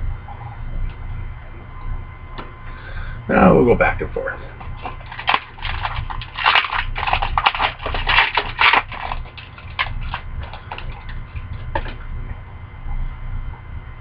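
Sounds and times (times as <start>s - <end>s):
card packs crinkling and rustling: 4.6s - 12.0s
cards clicking and snapping: 4.8s - 11.2s.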